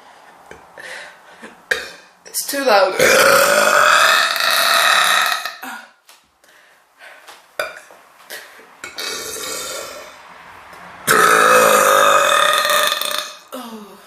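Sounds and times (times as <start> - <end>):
woman burping loudly: 1.7 - 2.1, 2.9 - 6.0, 8.8 - 10.1, 11.1 - 14.0.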